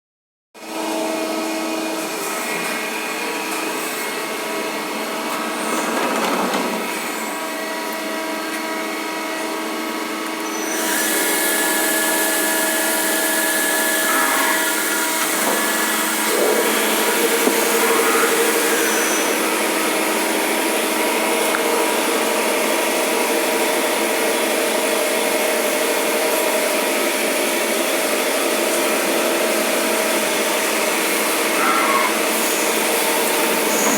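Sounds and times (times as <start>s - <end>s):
machine humming: 10.7s - 25.0s.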